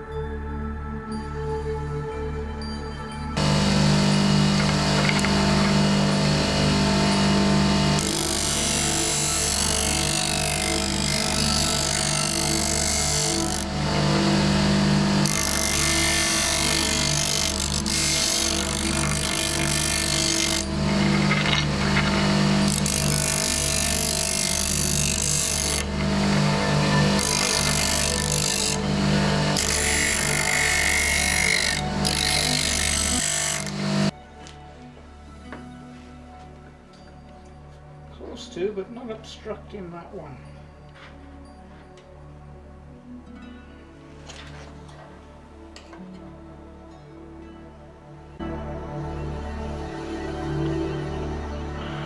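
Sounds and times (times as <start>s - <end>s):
power tool motor running: 3.4s - 34.1s.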